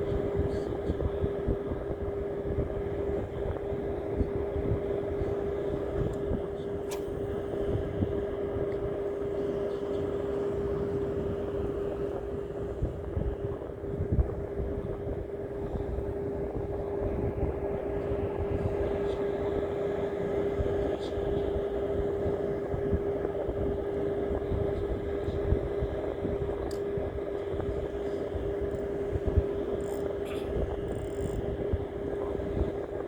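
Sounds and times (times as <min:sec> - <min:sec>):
steady engine-like hum: 0:00.0 - 0:33.0
wind rumble on microphone: 0:00.0 - 0:33.0
sharp click: 0:06.9 - 0:07.1.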